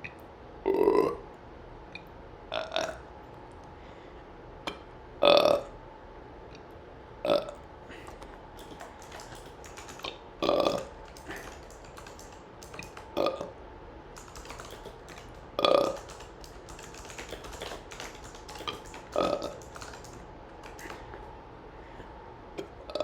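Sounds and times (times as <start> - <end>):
person burping: 0.6 - 1.2, 7.3 - 7.6, 10.4 - 10.9, 13.2 - 13.5
computer keyboard typing clicks: 7.9 - 13.5, 14.1 - 21.3.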